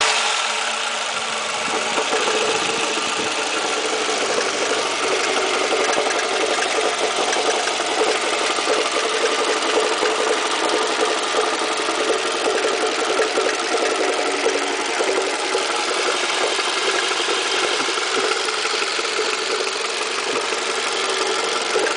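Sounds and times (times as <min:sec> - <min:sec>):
car engine idling: 0:00.0 - 0:21.9
fast even engine knocking: 0:00.2 - 0:21.9.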